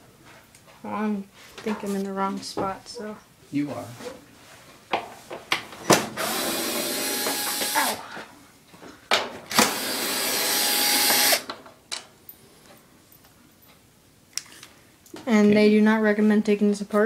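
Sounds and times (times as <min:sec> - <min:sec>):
power drill running: 0:06.2 - 0:08.0, 0:09.5 - 0:11.5.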